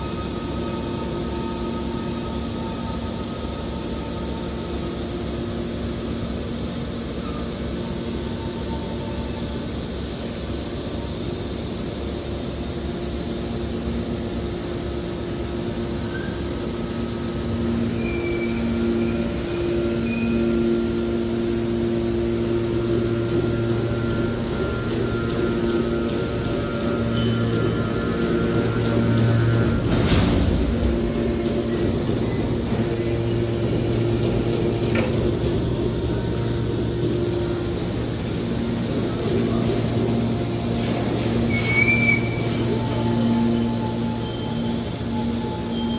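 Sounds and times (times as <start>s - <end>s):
baler machine hum: 0.0s - 45.9s
high-pitched metallic squeal: 15.8s - 45.9s.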